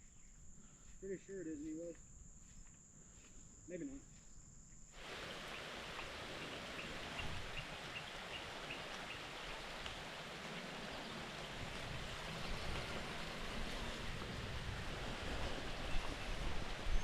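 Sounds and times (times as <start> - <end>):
rain falling: 5.0 - 17.0.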